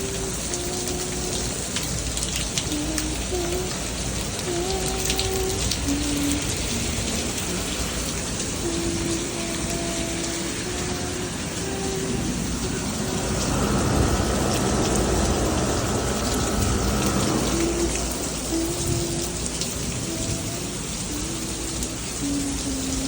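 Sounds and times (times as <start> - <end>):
steady rain falling: 0.0 - 23.0.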